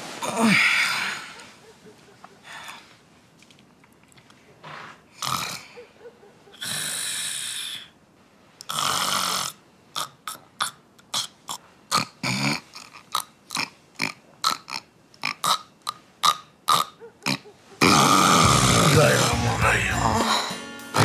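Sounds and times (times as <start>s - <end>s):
person snoring and snorting: 5.2s - 5.8s, 6.6s - 7.8s, 8.7s - 15.6s, 16.2s - 21.0s.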